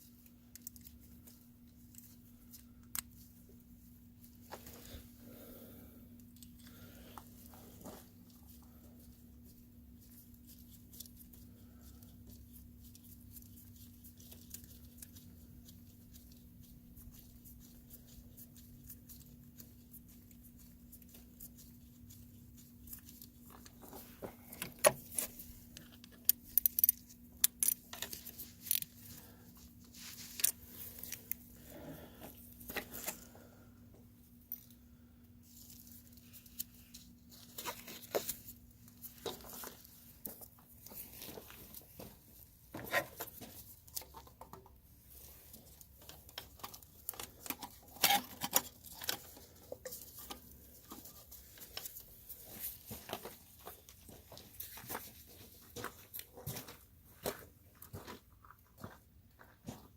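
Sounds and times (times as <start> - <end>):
faint steady hum: 0.0 - 59.9
small hard objects clicking and rattling: 25.8 - 29.0.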